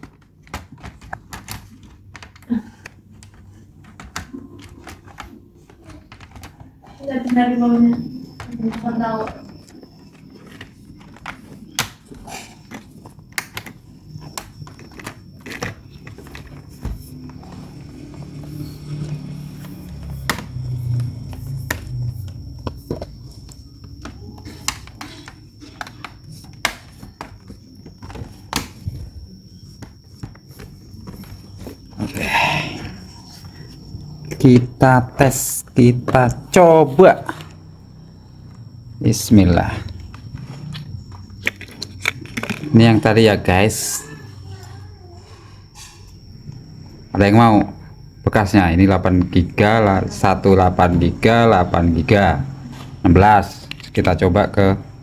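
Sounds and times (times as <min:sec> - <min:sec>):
clicks and taps on laptop casing: 0:21.6 - 0:31.8.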